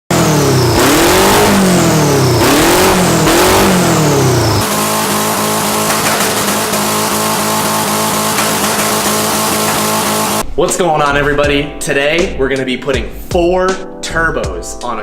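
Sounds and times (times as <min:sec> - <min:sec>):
car engine accelerating: 0:00.1 - 0:10.5
music with steady beat: 0:08.2 - 0:15.0.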